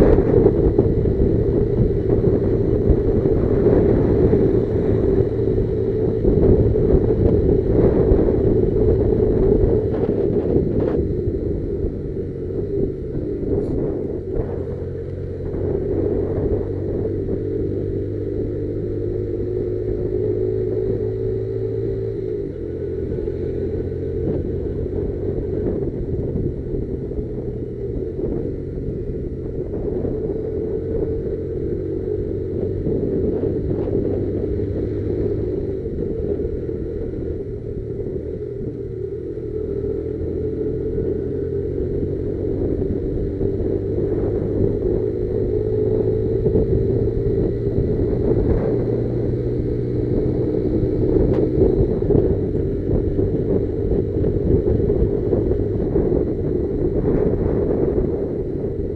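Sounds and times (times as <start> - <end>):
motorcycle engine running: 0.0 - 58.9.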